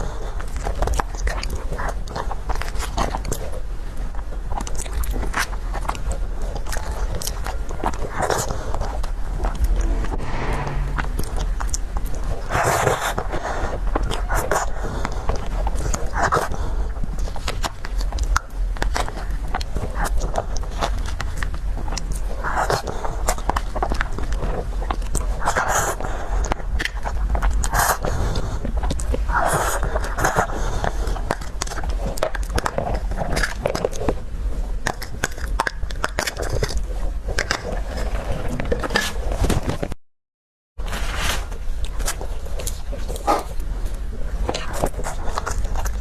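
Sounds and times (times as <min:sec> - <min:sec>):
steady low hum: 0:08.8 - 0:12.2
mouth clicks and chewing: 0:44.5 - 0:46.0.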